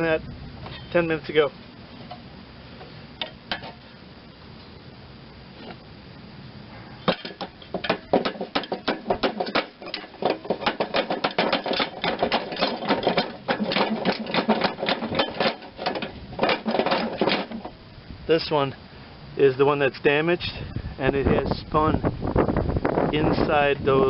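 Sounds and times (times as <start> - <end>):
metal tool clicks and knocks: 7.1 - 17.7.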